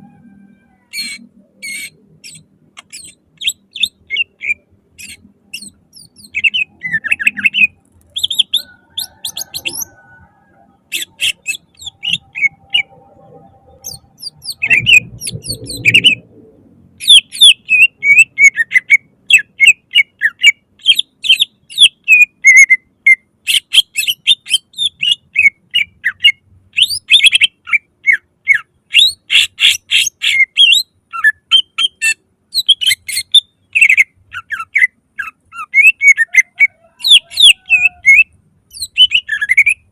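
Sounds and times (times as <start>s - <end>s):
low rumbling noise: 0.0s - 18.0s
bird singing sharp chirps: 0.1s - 16.3s, 23.5s - 39.9s.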